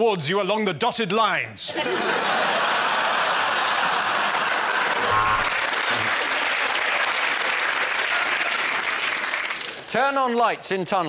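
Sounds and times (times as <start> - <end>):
audience laughter: 1.7 - 7.2
audience applauding: 2.6 - 9.9.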